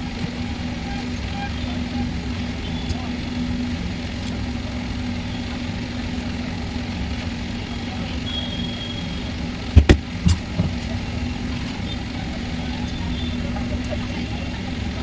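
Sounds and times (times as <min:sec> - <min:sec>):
engine humming at idle: 0:00.0 - 0:15.0
sharp knocks: 0:09.8 - 0:10.8.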